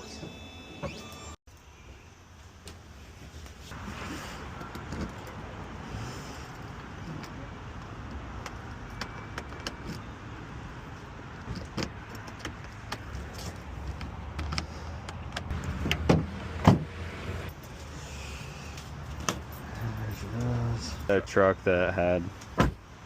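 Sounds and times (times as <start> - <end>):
handling clicks and knocks: 6.8 - 10.1, 11.3 - 16.3.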